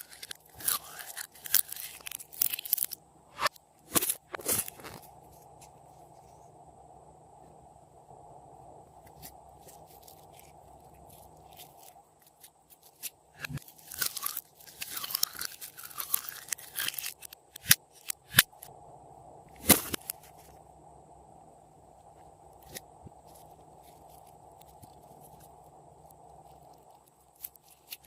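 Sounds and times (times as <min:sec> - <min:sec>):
slime crackling and popping: 0:00.0 - 0:03.0, 0:11.5 - 0:18.5.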